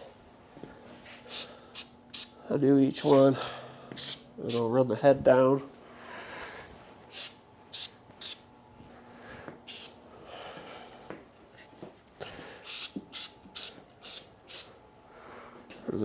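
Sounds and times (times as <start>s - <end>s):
aerosol can hissing squirts: 4.0s - 4.6s, 7.2s - 8.4s, 9.7s - 9.9s.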